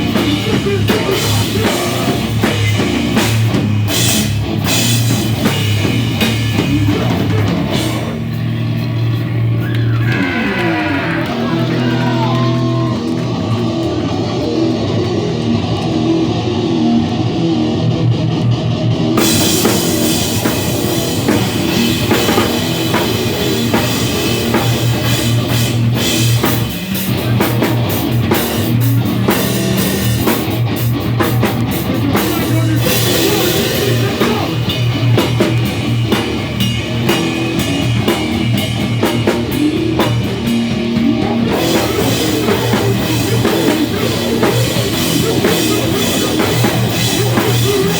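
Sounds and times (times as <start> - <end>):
drums with cymbals: 0.0 - 10.1, 19.2 - 47.9
electric guitar: 0.0 - 47.9
rock band playing loudly: 0.0 - 47.9.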